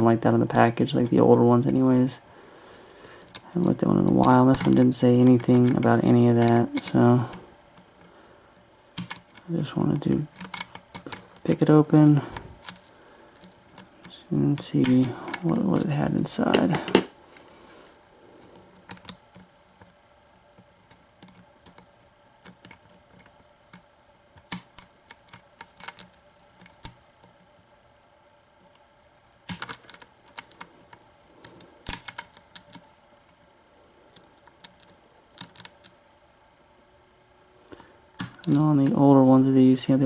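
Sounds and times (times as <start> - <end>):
lock pick clicking and scraping: 10.3 - 11.5.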